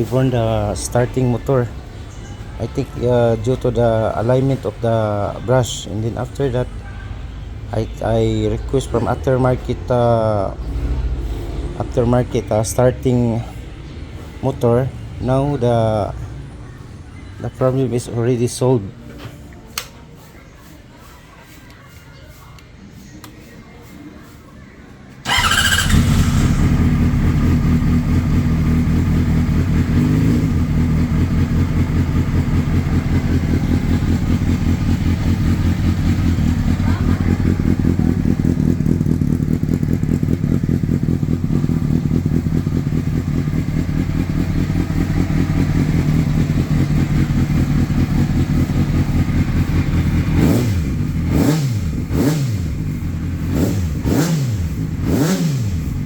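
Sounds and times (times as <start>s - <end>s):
engine throttle blips: 25.2s - 56.0s
motorcycle engine idling: 25.2s - 56.0s.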